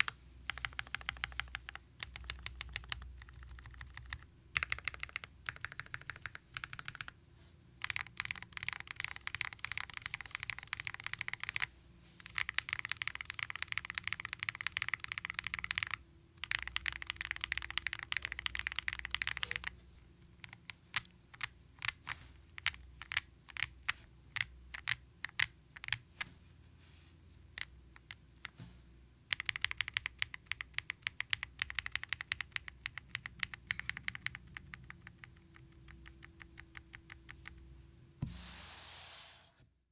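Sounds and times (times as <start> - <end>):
typing on mechanical keyboard: 0.0 - 7.2, 7.8 - 19.7, 20.4 - 26.0, 29.3 - 37.6.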